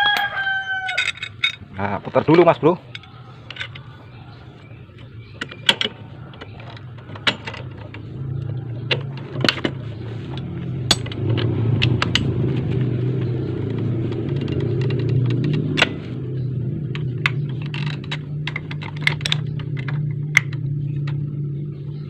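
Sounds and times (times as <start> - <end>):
metallic clinks of socket tools: 0.0 - 1.6
low mechanical hum: 0.0 - 22.0.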